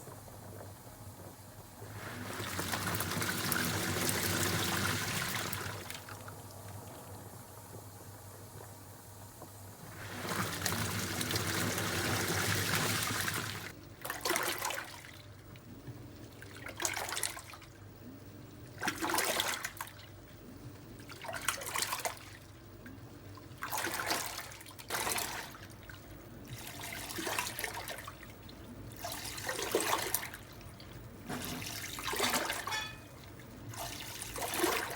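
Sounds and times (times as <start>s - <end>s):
water and laundry sloshing: 1.7s - 7.5s, 9.8s - 34.9s
water rushing into tub: 1.8s - 6.3s, 9.9s - 15.2s.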